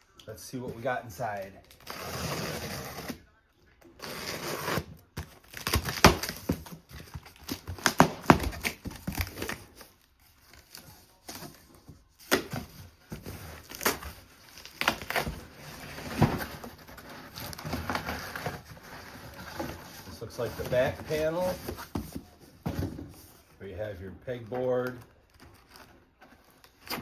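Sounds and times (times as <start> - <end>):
cardboard scraping and crinkling: 4.0 - 23.5.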